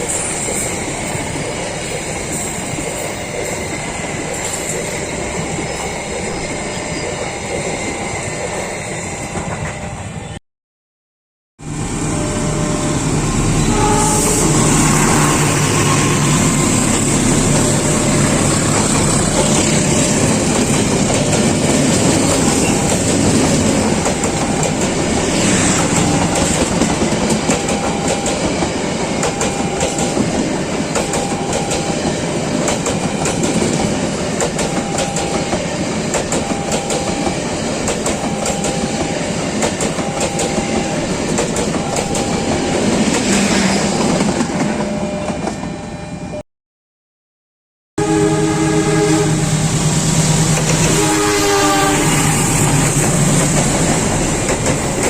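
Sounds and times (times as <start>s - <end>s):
short repeated tone: 13.5s - 16.4s
train wheels clicking over rail joints: 16.4s - 44.8s, 50.2s - 51.0s, 52.4s - 55.0s.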